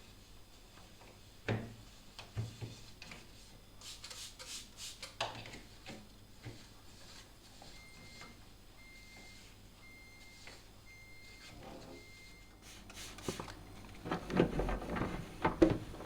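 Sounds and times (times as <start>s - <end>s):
rubbing and rustling: 12.2s - 16.0s
objects knocking in refrigerator: 13.3s - 16.0s.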